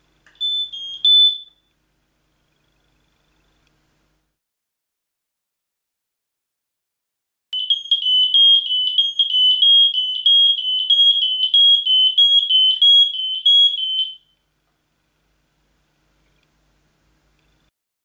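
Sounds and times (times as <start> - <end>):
smoke detector alarm: 0.3 - 1.7, 7.6 - 14.4.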